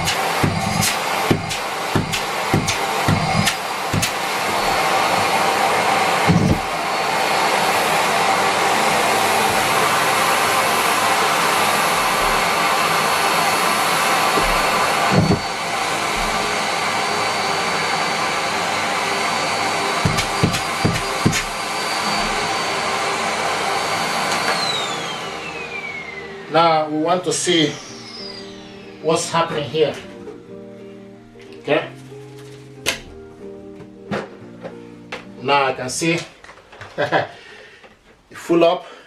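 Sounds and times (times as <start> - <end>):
knocks and clicks: 0.0 - 4.2
vacuum cleaner running: 0.0 - 31.3, 36.0 - 39.0.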